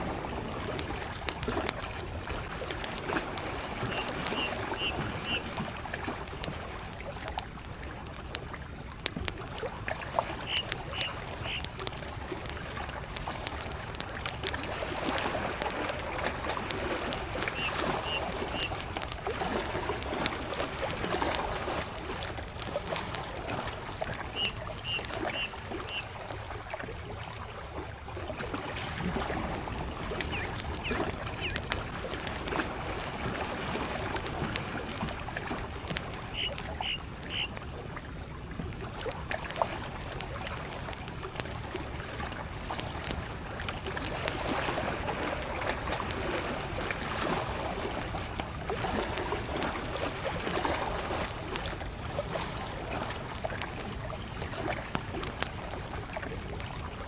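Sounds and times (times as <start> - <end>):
campfire crackling: 0.0 - 57.0
water lapping: 0.0 - 57.0
bird high short notes: 24.4 - 26.1, 36.3 - 37.5.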